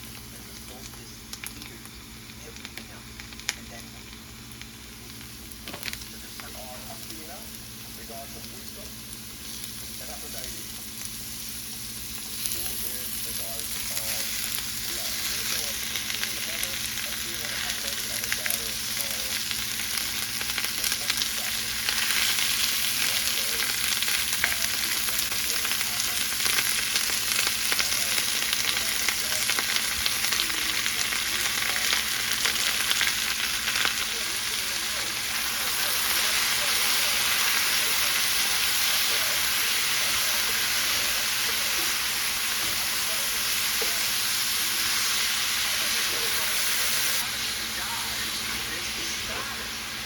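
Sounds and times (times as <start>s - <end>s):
food sizzling in a pan: 0.0s - 50.0s.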